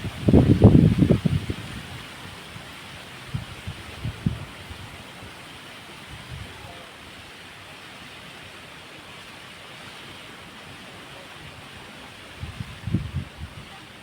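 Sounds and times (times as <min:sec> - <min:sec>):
wind thuds on microphone: 0:00.0 - 0:02.1, 0:03.3 - 0:04.9, 0:12.4 - 0:13.7
strong wind: 0:00.0 - 0:06.8, 0:11.4 - 0:14.0
heavy rain: 0:00.0 - 0:14.0.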